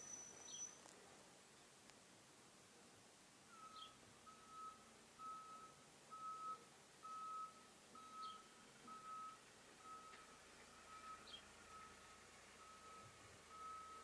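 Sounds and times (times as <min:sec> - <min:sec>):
reversing alarm beeping: 0:03.6 - 0:10.3, 0:12.6 - 0:14.0.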